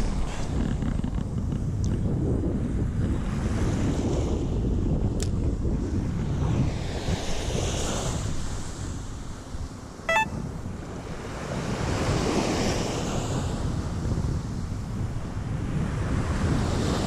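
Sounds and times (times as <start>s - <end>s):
wind buffeting the microphone: 0.0s - 9.3s, 13.4s - 17.0s
short high blip: 10.1s - 10.5s.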